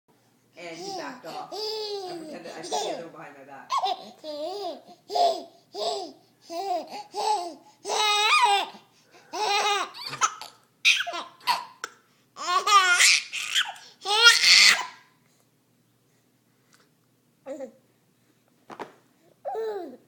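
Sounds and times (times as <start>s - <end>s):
baby laughing: 0.8s - 3.0s, 3.7s - 15.0s.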